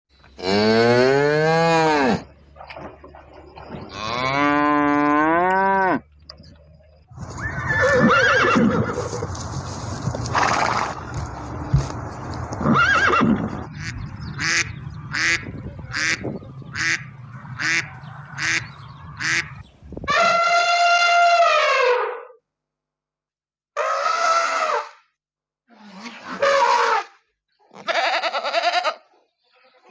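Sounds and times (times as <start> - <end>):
drawn-out animal call: 7.1 - 22.0
horse whinnying: 7.2 - 9.3, 10.3 - 11.0, 12.6 - 13.6.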